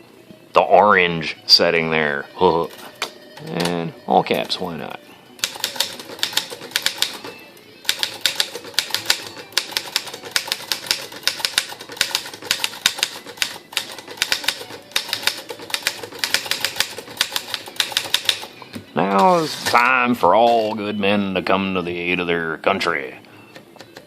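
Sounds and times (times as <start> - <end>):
typewriter keystroke clacks: 5.4 - 7.2, 7.9 - 18.4.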